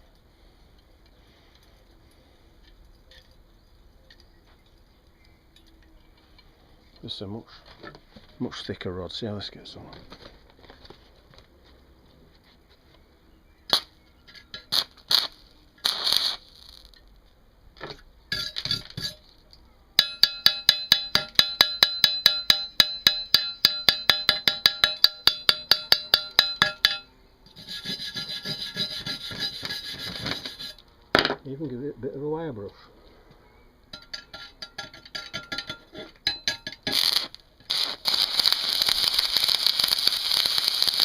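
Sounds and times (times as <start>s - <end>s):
sharp metallic taps ringing: 20.0s - 27.2s, 33.9s - 37.1s
scraping rub on metal: 27.6s - 30.8s.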